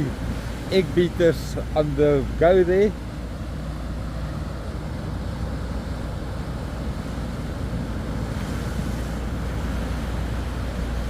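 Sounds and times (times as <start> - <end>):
outboard motors running: 0.0 - 11.0
surf washing: 0.0 - 11.0.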